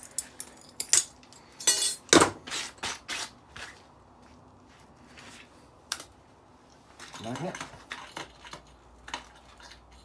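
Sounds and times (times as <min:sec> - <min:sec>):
tools knocking and scraping metal: 0:00.0 - 0:02.3.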